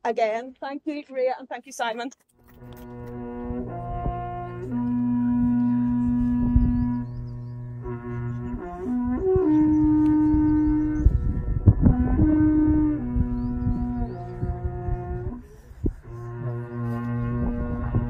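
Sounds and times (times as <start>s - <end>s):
low steady drone: 2.4s - 18.0s
horn playing long held notes: 2.5s - 18.0s.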